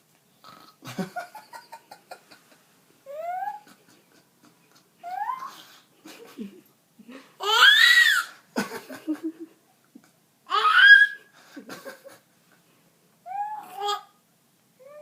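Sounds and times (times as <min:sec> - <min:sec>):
baby squealing high-pitched: 0:03.1 - 0:03.6, 0:05.0 - 0:05.6, 0:07.4 - 0:08.3, 0:10.5 - 0:11.2, 0:13.3 - 0:14.1
baby laughing: 0:03.1 - 0:06.4.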